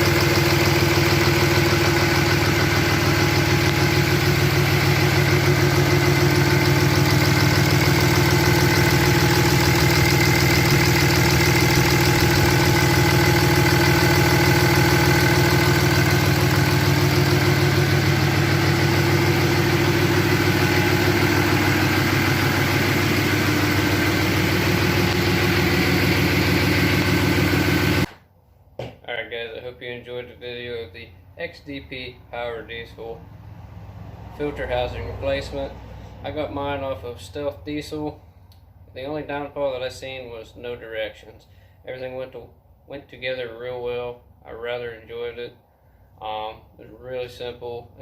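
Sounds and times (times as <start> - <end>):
diesel engine idling: 0.0 - 28.1.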